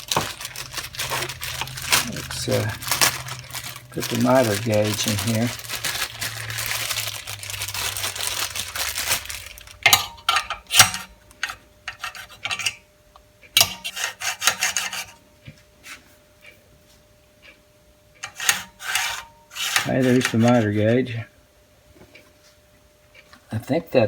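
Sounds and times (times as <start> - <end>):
rustling: 0.0 - 9.9.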